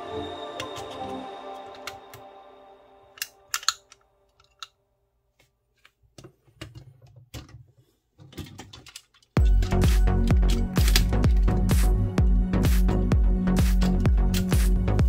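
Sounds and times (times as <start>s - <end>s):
background music: 0.0s - 4.4s, 9.4s - 15.0s
plastic toy parts clicking: 3.2s - 4.8s, 8.2s - 11.6s.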